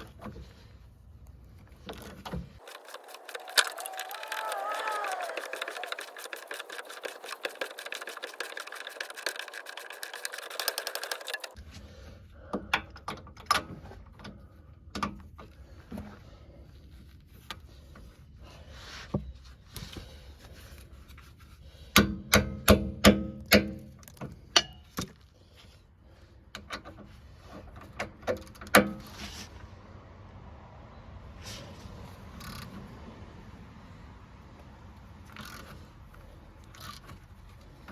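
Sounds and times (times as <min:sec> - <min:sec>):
rapid clicking of hand tool: 0:02.6 - 0:11.6.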